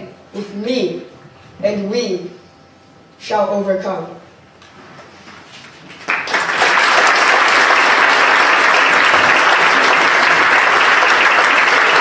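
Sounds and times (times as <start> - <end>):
large audience applauding: 6.0 - 12.0.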